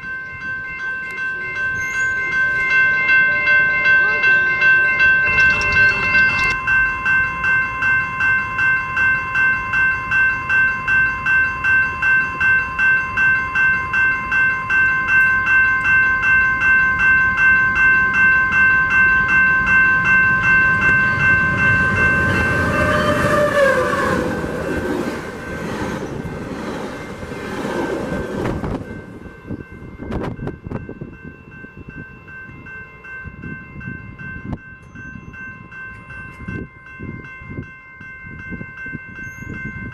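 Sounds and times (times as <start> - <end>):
crossing warning bell ringing: 0.0 - 39.9
train rumble: 9.8 - 37.7.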